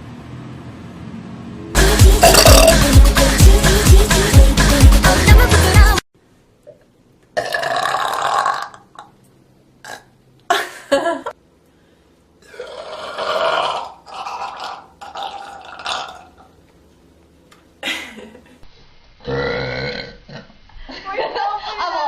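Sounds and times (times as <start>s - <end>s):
gulps: 2.2s - 2.8s, 12.5s - 16.5s
person burping: 2.2s - 2.9s, 7.4s - 9.1s, 9.8s - 10.1s, 12.4s - 16.5s, 19.2s - 20.6s.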